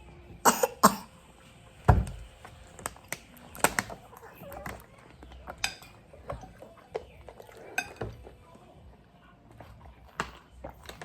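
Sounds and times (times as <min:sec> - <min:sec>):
dishes and cutlery clinking: 0:02.8 - 0:08.4.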